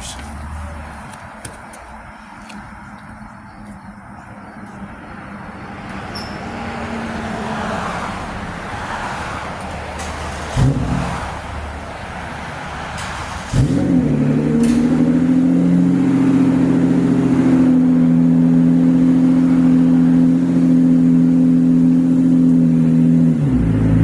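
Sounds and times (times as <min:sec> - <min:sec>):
car engine running: 0:13.4 - 0:24.0.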